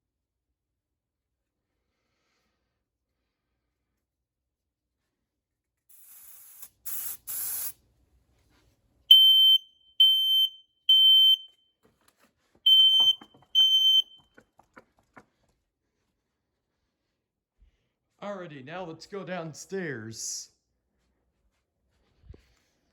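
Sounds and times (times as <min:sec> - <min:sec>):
aerosol spray hissing: 0:05.9 - 0:07.8
smoke alarm beeping: 0:09.1 - 0:11.7, 0:12.7 - 0:14.3.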